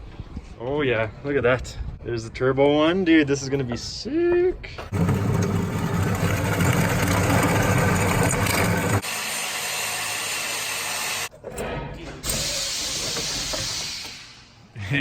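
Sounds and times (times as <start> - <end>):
power tool cutting pipe: 5.0 - 11.3.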